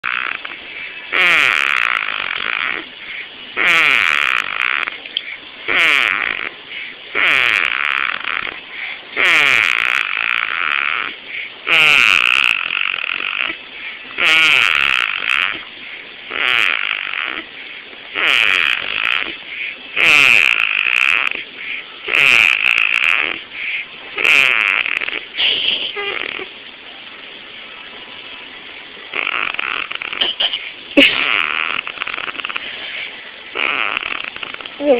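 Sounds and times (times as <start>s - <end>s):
girl snoring: 0.0s - 2.9s, 3.6s - 5.0s, 5.7s - 8.6s, 9.2s - 13.6s, 14.2s - 15.6s, 16.3s - 17.5s, 18.1s - 19.4s, 20.0s - 21.4s, 22.1s - 23.4s, 24.2s - 26.5s, 29.1s - 34.9s.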